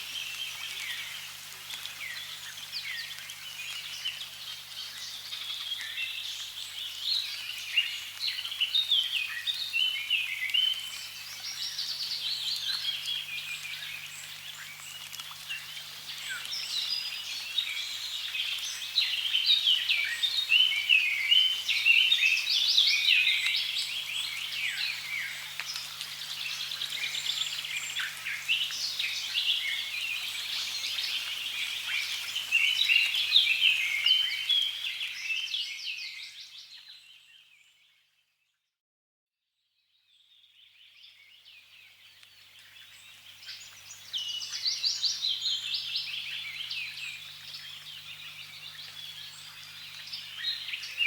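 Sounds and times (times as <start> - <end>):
birds chirping and trilling: 41.0 - 51.0.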